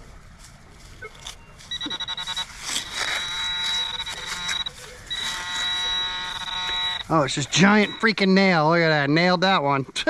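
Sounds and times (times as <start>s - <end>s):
digging scrapes: 0.4s - 8.0s
metal detector buzzing: 1.6s - 8.3s.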